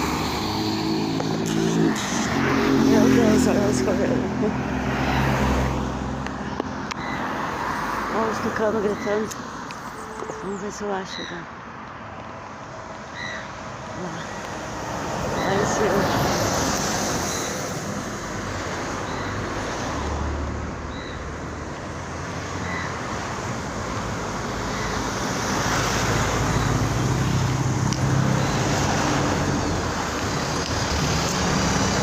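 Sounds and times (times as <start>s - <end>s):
traffic on a wet road: 0.0s - 32.0s
vehicle engine hum: 0.0s - 32.0s.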